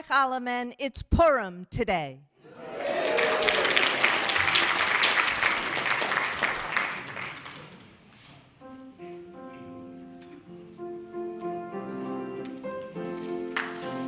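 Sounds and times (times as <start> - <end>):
audience applauding: 2.6 - 8.0
instrumental music with held notes: 8.6 - 14.0.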